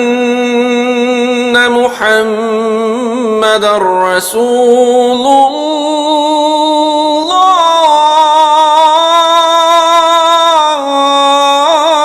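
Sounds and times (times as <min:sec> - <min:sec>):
solo voice chanting: 0:00.0 - 0:12.0.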